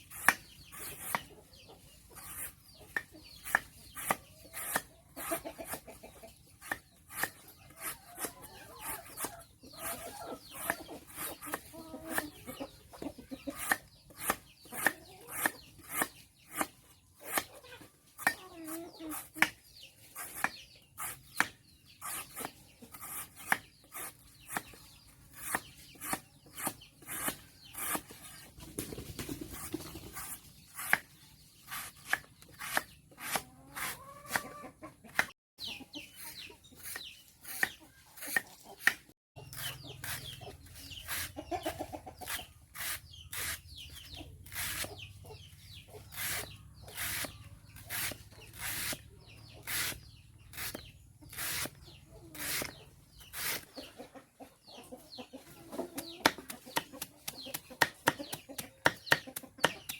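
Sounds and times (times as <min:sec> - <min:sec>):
chickens clucking: 0:00.0 - 0:59.9.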